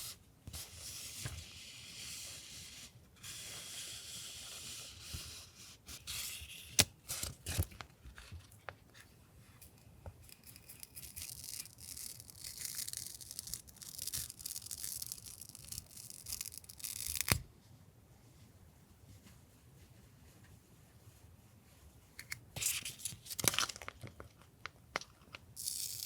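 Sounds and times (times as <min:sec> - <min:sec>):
scratchy rubbing or tearing: 0:10.3 - 0:17.4.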